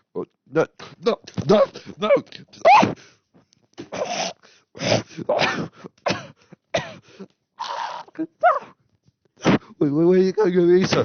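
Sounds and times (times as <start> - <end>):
person yelping: 1.5 - 3.0, 7.6 - 8.8.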